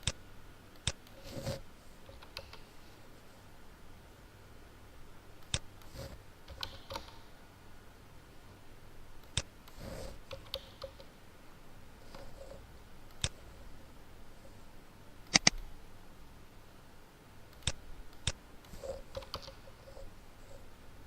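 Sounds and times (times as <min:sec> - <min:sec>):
computer mouse clicks: 0:00.0 - 0:02.7, 0:05.4 - 0:07.3, 0:09.2 - 0:11.1, 0:12.1 - 0:13.5, 0:15.2 - 0:15.7, 0:17.5 - 0:20.6.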